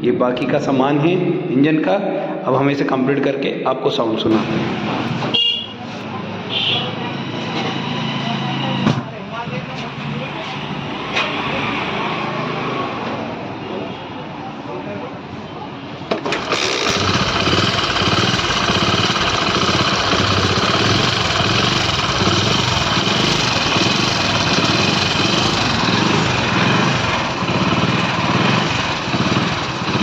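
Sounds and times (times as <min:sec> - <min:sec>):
motorcycle engine running: 0:16.2 - 0:30.0.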